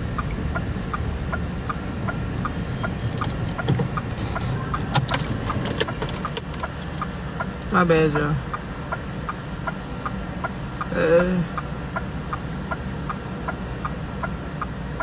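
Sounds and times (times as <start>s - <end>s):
car engine and road rumble: 0.0s - 15.0s
turn signal ticking: 0.0s - 15.0s
sharp rattling clicks: 3.1s - 7.4s.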